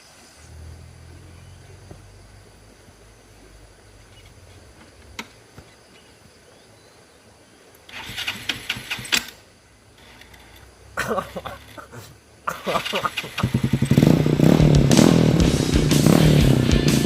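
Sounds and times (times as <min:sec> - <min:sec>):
rough crackling engine burst: 0:07.9 - 0:09.4, 0:12.5 - 0:17.0
motorcycle engine running: 0:12.8 - 0:17.0.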